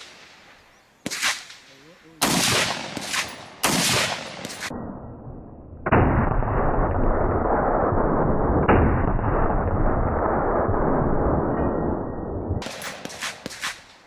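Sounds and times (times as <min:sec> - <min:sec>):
gunshots with echo: 0:01.0 - 0:04.9, 0:12.6 - 0:14.0.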